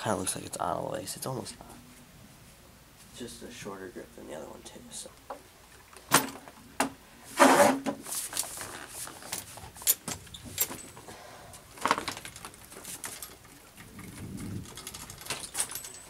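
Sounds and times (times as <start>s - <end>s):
bike parts clicking and knocking: 11.8s - 16.0s.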